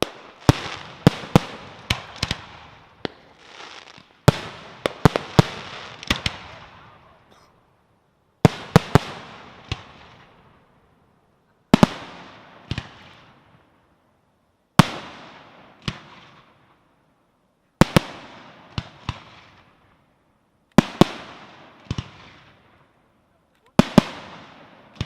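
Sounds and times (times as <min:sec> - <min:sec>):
fireworks banging with echoes: 0:00.0 - 0:07.3, 0:08.4 - 0:10.6, 0:11.5 - 0:13.7, 0:14.7 - 0:16.7, 0:17.8 - 0:19.7, 0:20.7 - 0:22.9, 0:23.6 - 0:25.0.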